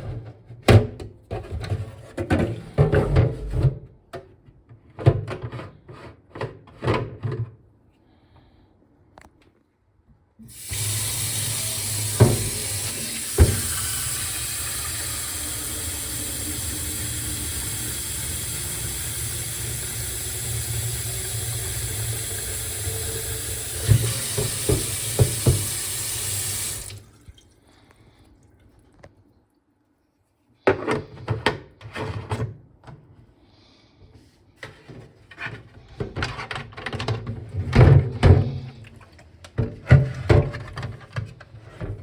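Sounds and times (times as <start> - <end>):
tap water running into tank: 10.4 - 28.0.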